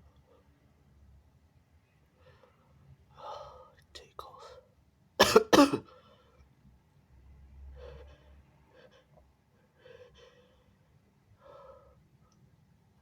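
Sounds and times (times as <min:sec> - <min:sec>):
person breathing softly: 0:02.1 - 0:03.8, 0:07.6 - 0:12.1.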